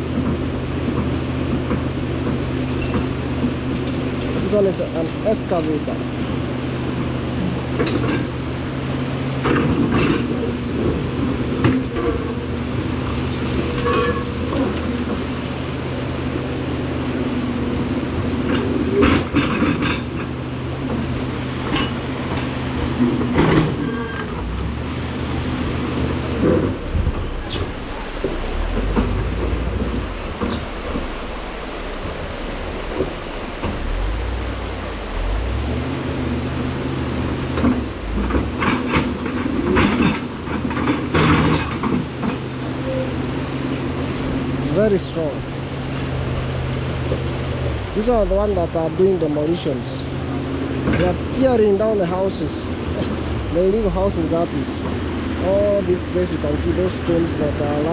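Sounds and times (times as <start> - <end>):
excavator diesel engine humming: 0.0 - 57.9
metallic clanks: 13.3 - 15.3.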